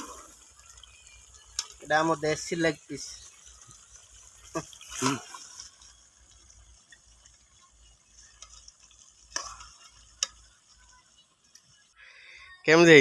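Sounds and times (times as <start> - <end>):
spoon stirring in pot: 3.2 - 11.9.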